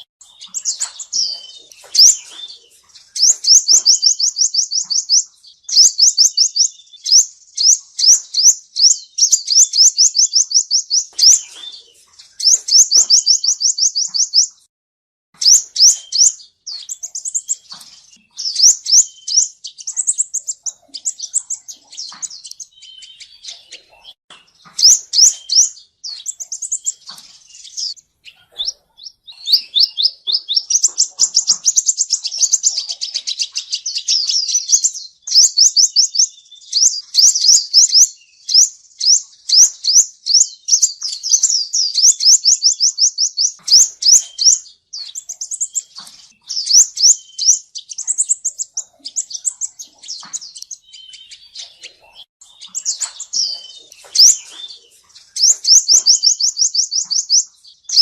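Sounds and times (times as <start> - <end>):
bird singing high trills: 0.0 - 14.7, 15.4 - 58.0.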